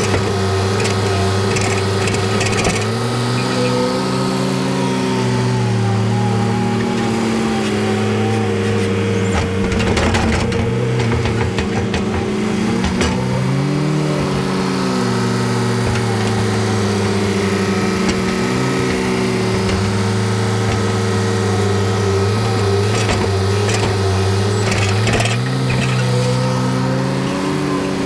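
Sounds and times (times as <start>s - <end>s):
knocks and clatters: 0.0s - 3.4s, 9.2s - 26.4s
loader engine running: 0.0s - 28.0s.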